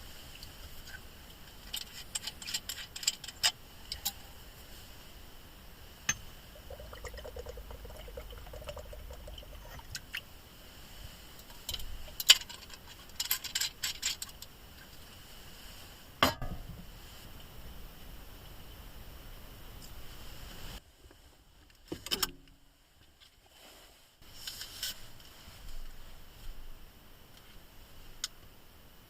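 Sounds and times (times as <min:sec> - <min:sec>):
glass or metal clinking: 0:06.1 - 0:07.2
liquid pouring: 0:06.4 - 0:10.2.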